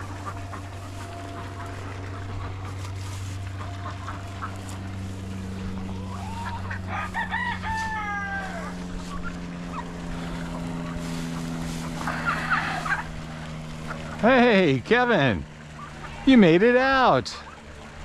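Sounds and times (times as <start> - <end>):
steady low hum: 0.0 - 18.0
rooster crowing: 6.0 - 9.1.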